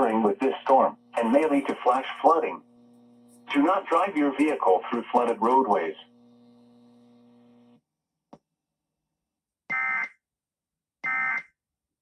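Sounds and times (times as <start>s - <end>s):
buzzy digital bursts: 0.0s - 7.6s
faint low hum: 0.0s - 7.8s.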